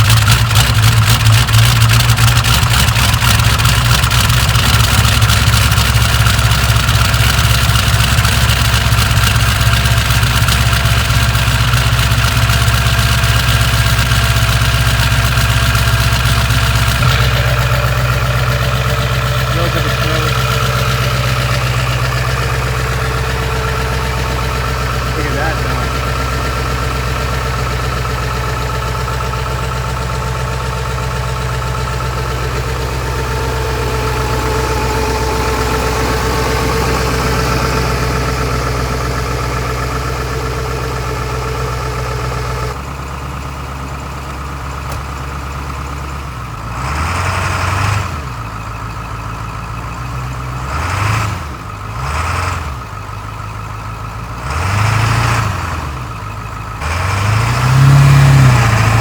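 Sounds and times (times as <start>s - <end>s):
engine revving: 0.0s - 42.8s, 46.7s - 48.3s, 50.5s - 52.8s, 54.4s - 56.1s, 56.8s - 59.0s
diesel engine idling: 0.0s - 59.0s.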